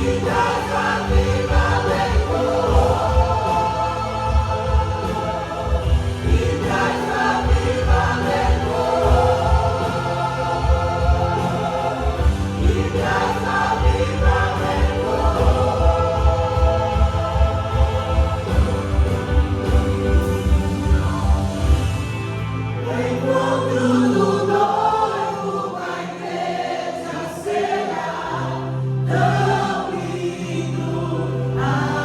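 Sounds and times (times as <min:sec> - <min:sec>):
voices singing together: 0:00.0 - 0:21.8, 0:22.7 - 0:32.0
steady low drum beat: 0:00.0 - 0:22.3
band with sustained chords: 0:00.0 - 0:26.2
gospel worship song: 0:00.0 - 0:32.0.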